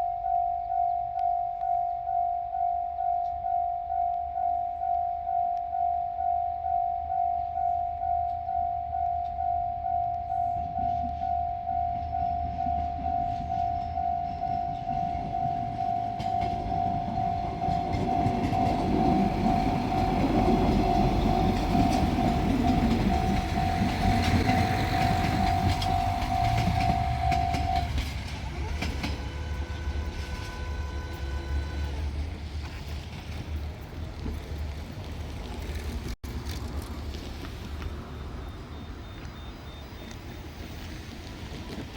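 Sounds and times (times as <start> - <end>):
level-crossing warning bell: 0.0 - 32.2
diesel train running: 6.5 - 41.9.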